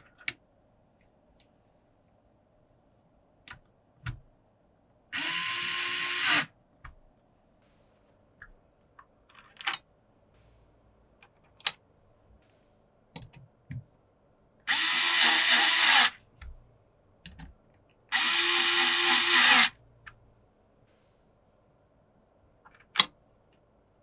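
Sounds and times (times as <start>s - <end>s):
parts clicking and tapping: 0.0s - 0.4s, 8.4s - 9.8s, 13.1s - 13.9s, 17.2s - 18.4s, 22.7s - 23.6s
electric screwdriver whirring: 5.2s - 6.5s, 14.7s - 16.2s, 18.1s - 19.7s.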